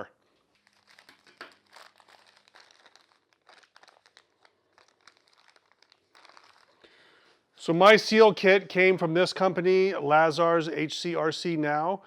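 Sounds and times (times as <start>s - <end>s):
plastic packaging crinkling: 0.2s - 7.5s.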